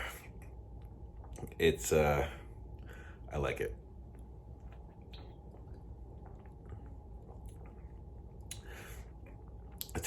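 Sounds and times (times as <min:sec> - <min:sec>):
lip smacks and tongue clicks: 0:04.1 - 0:10.0.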